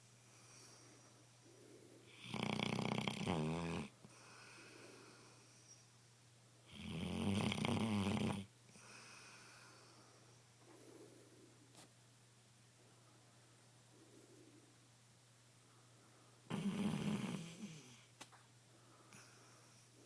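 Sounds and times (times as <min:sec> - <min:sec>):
dog snoring: 0:02.1 - 0:04.0, 0:06.6 - 0:08.5, 0:16.5 - 0:18.1.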